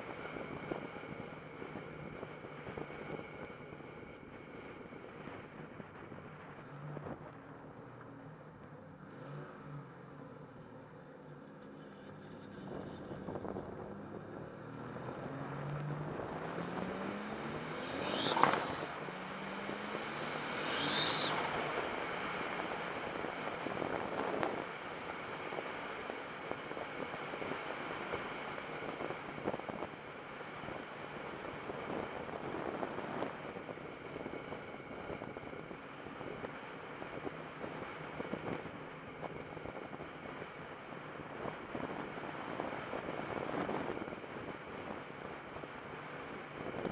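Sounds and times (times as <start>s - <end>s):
wind noise: 12.5s - 45.8s, 46.4s - 46.9s
car engine revving: 13.8s - 22.8s
turbo hissing whoosh: 16.8s - 21.7s.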